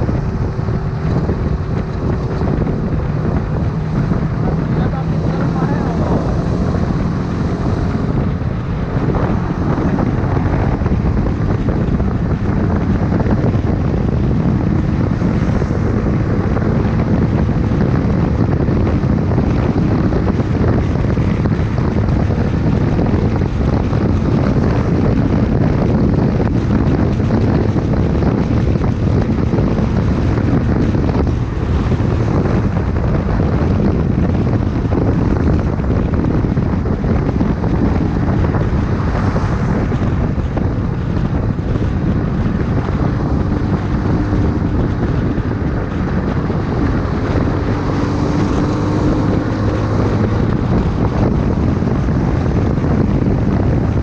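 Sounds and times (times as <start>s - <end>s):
motorcycle engine running: 0.0s - 54.0s
wind noise on microphone: 0.0s - 54.0s.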